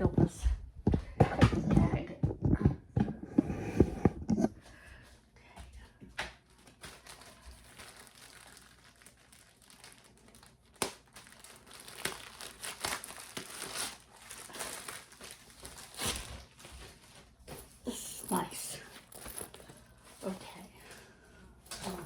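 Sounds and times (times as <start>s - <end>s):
bag crinkling: 6.5s - 17.4s.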